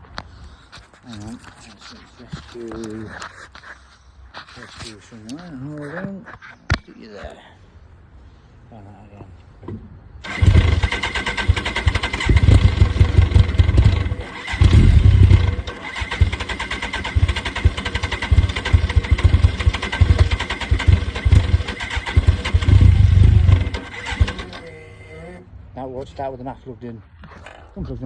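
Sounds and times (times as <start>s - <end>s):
engine cranking and firing unevenly: 10.2s - 25.4s.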